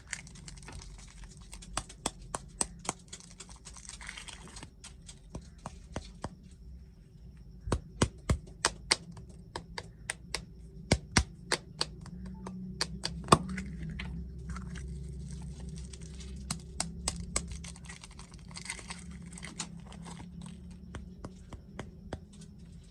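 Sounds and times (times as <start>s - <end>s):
wrapper crinkling and rustling: 0.0s - 2.0s, 3.0s - 5.2s, 14.5s - 20.5s
taps and clicks on packaging: 1.4s - 6.4s, 7.7s - 13.7s, 16.4s - 17.9s.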